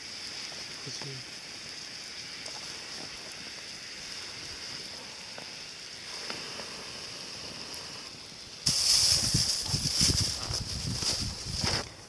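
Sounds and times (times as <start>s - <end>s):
campfire hissing: 0.0s - 12.0s
faint fire crackles: 0.0s - 12.0s.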